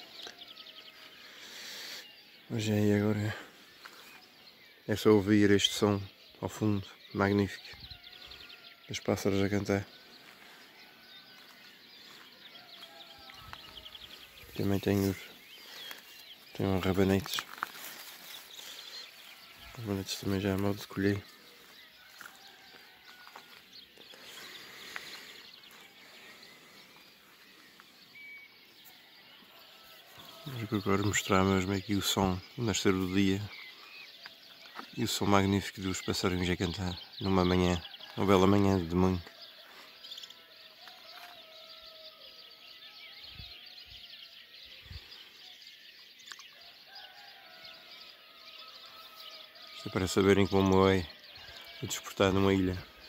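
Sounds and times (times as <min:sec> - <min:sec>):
faint songbirds chirping: 0:00.0 - 0:53.0
distant rooster crows: 0:07.7 - 0:16.2, 0:16.9 - 0:27.2, 0:28.7 - 0:33.0, 0:36.2 - 0:44.8, 0:46.4 - 0:53.0.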